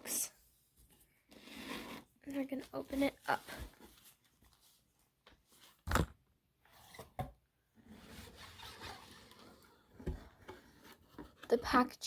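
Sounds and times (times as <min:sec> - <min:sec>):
cardboard rubbing and scraping: 0:07.8 - 0:11.5.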